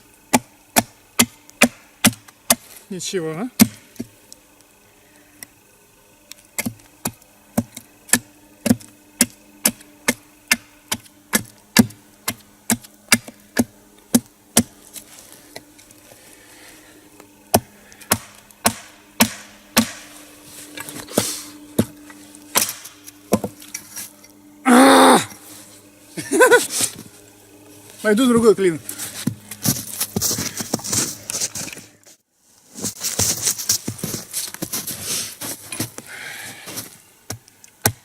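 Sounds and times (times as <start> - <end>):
faint steady hum: 0.0 - 38.0
blows driving wedges into log: 17.5 - 20.2, 22.5 - 23.6.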